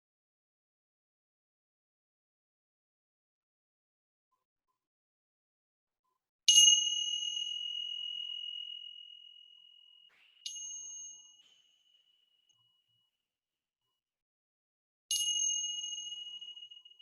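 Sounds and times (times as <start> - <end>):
meditation bell ringing: 6.5 - 12.2, 15.1 - 17.0.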